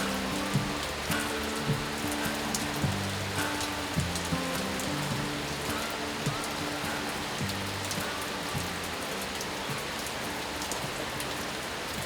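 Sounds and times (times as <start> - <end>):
rain pattering: 0.0 - 12.0
soft low music notes: 0.0 - 12.0.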